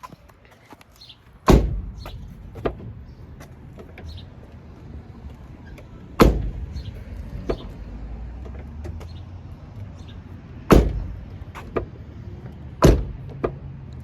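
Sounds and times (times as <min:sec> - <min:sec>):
pickup truck door slamming: 0:01.5 - 0:02.9, 0:06.2 - 0:06.9, 0:10.7 - 0:11.9, 0:12.8 - 0:13.6.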